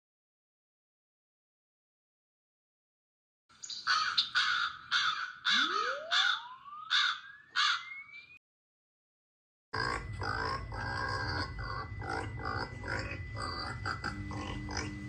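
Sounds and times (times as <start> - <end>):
crow-like caws: 3.9 - 7.9, 9.8 - 15.0.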